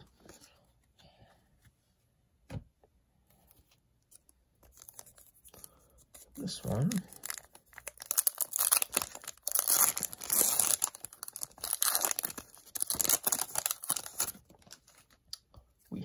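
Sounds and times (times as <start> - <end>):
card pack wrapper tearing: 6.4 - 15.2.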